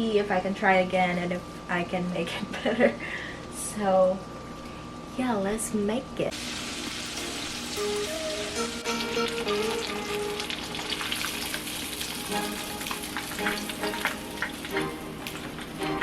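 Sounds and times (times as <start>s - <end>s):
food sizzling in a frying pan: 6.3s - 16.0s
faint background music: 12.2s - 16.0s.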